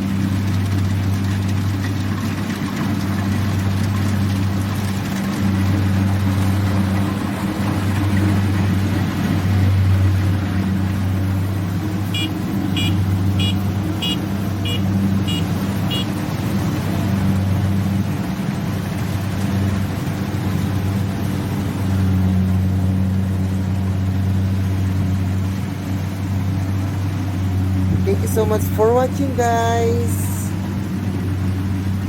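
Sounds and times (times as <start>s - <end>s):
harvester engine humming: 0.0s - 32.0s
short high warning beeps: 12.2s - 16.1s.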